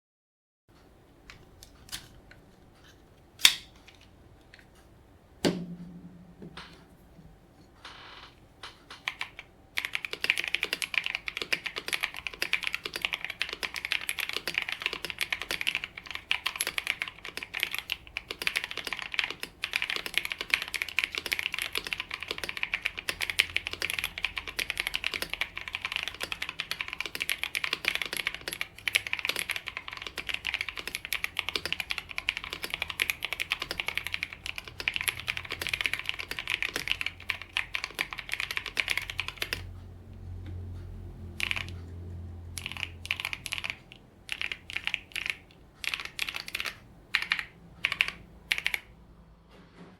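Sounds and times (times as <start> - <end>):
fast mechanical keyboard typing: 8.6 - 39.8, 41.2 - 49.0.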